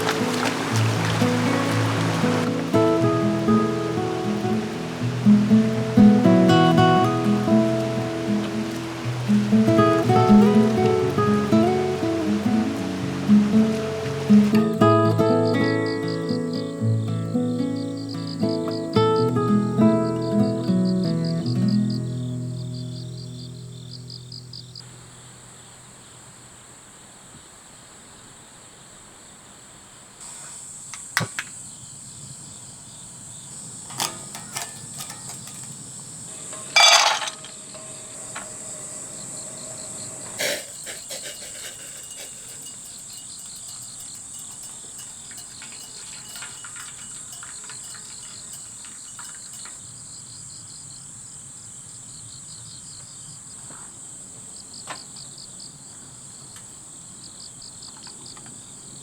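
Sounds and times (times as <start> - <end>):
crickets chirping: 0.0 - 59.0.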